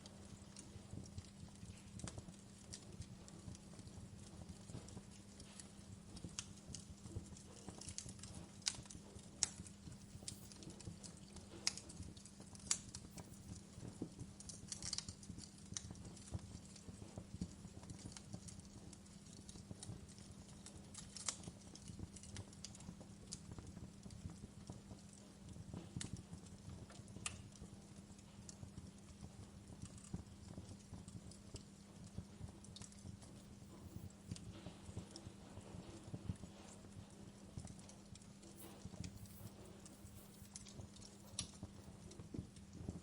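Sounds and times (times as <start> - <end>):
wood fire crackling: 0.0 - 43.0
steady low hum: 33.2 - 42.3.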